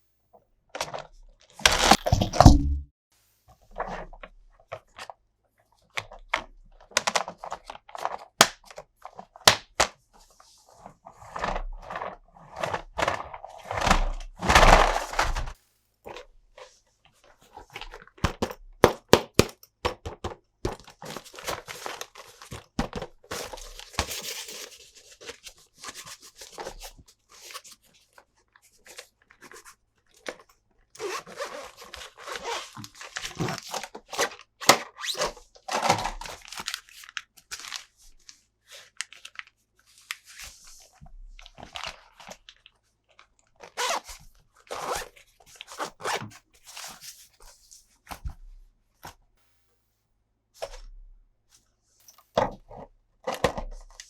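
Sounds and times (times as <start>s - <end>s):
plastic and cardboard tearing: 1.6s - 2.6s.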